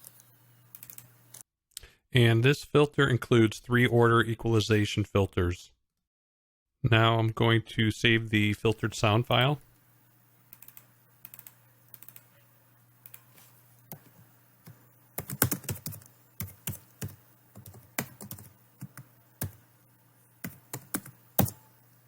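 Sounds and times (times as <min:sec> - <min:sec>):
faint steady hum: 0:00.0 - 0:05.0, 0:06.9 - 0:22.0
keyboard typing clicks: 0:15.2 - 0:19.6, 0:20.4 - 0:21.7.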